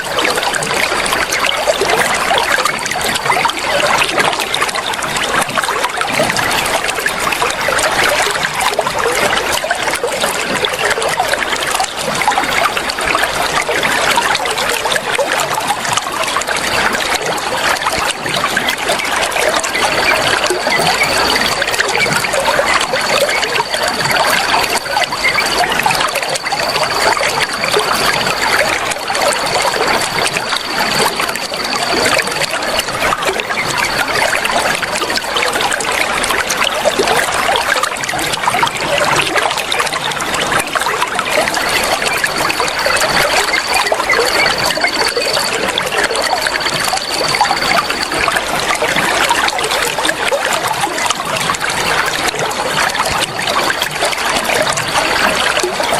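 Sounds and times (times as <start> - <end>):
water trickling and splashing: 0.0 - 55.9
high-pitched tone: 41.1 - 49.0.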